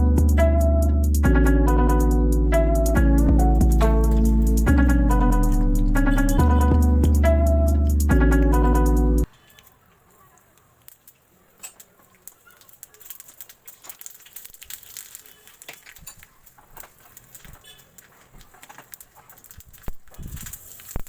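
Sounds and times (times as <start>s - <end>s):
food sizzling in a pan: 10.2s - 17.9s, 19.0s - 21.0s.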